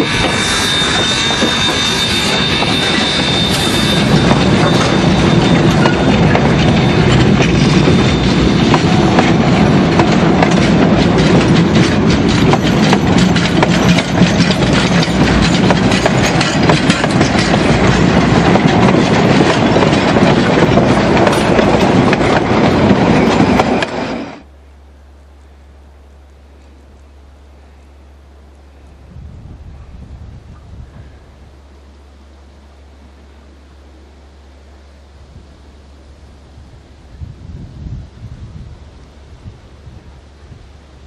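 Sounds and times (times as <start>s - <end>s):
wheels clattering on rails: 0.0s - 24.4s
steam train running: 0.0s - 24.5s.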